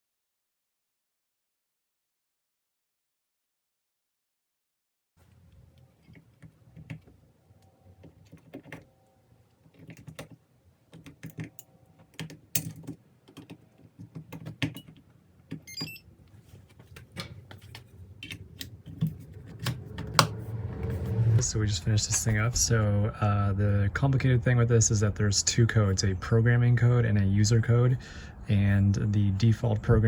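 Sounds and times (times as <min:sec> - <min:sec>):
clicks and taps on keypad lock: 0:09.7 - 0:16.0
rapid high beeps: 0:15.7 - 0:16.0.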